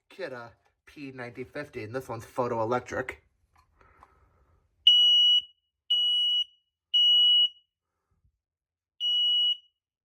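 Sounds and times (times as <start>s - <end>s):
smoke alarm high-pitched beeps: 4.9s - 7.7s, 9.0s - 9.8s.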